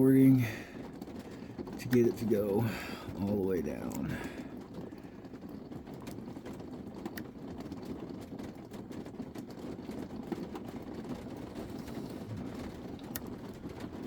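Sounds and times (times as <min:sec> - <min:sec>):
steady low rumble: 0:00.0 - 0:06.4.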